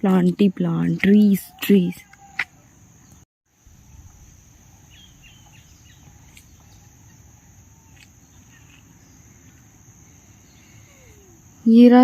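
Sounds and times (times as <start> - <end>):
insects droning: 0.0 - 12.0
bird chirps: 4.7 - 9.6.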